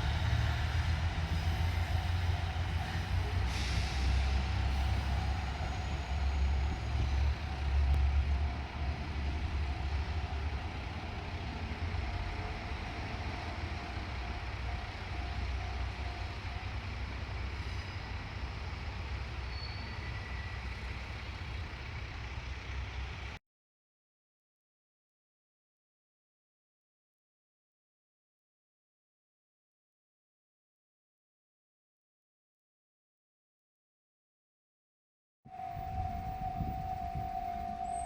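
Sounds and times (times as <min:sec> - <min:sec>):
train engine rumbling: 0:00.0 - 0:23.4, 0:35.5 - 0:38.0.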